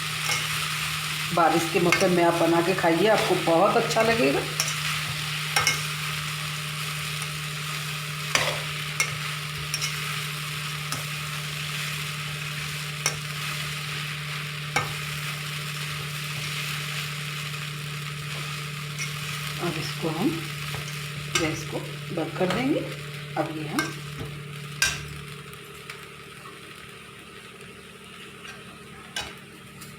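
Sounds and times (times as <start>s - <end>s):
food sizzling in a pan: 0.0s - 29.9s
spoon knocking and scraping pan: 4.0s - 6.0s, 8.3s - 10.1s, 14.7s - 15.2s, 20.6s - 21.7s, 23.8s - 25.1s.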